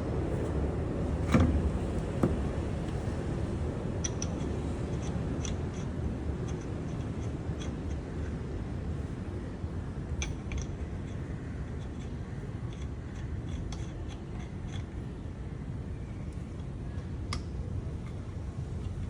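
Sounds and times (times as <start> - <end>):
low outdoor rumble: 0.0 - 19.0
metallic clicks of lug nuts: 10.2 - 15.0.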